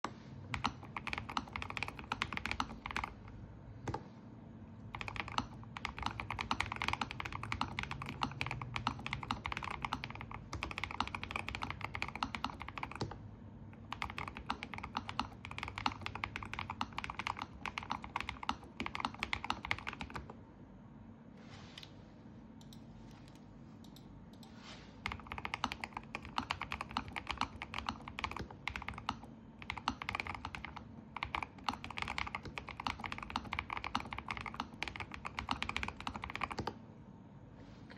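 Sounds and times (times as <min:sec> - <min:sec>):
mechanical keyboard typing: 0:00.5 - 0:04.0, 0:04.9 - 0:13.2, 0:13.8 - 0:20.4, 0:25.0 - 0:36.8.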